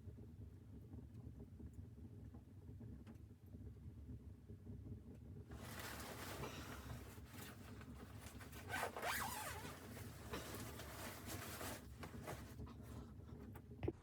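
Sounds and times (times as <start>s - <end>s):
zipper pulled: 7.3s - 12.5s.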